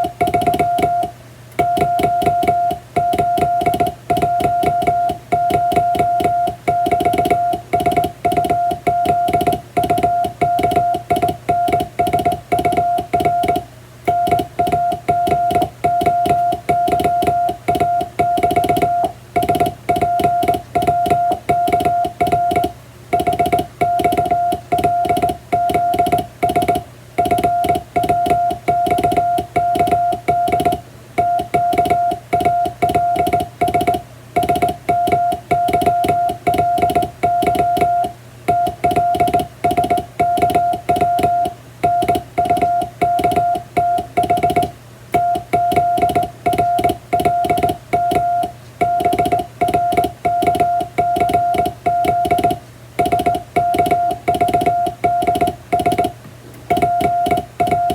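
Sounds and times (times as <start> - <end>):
morse code beeps: 0.0 - 57.9
telegraph key clicking: 45.4 - 57.9.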